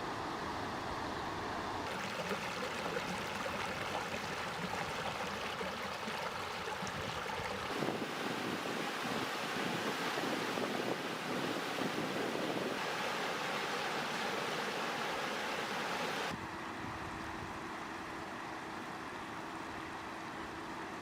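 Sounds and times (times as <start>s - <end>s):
floodwater rushing: 1.8s - 16.4s
wind on microphone: 6.6s - 12.8s.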